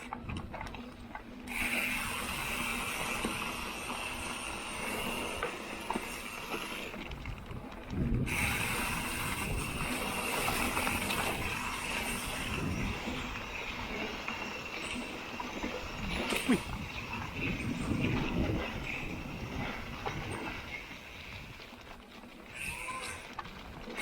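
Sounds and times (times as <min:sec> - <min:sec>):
bicycle freehub ratchet buzzing: 0:01.5 - 0:07.0, 0:08.2 - 0:20.4.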